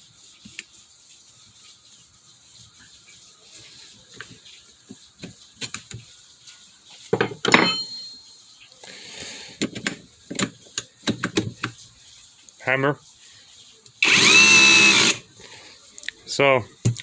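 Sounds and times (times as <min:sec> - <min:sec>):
sharp metallic clink: 0:07.5 - 0:08.3
handling clicks and knocks: 0:09.6 - 0:11.8.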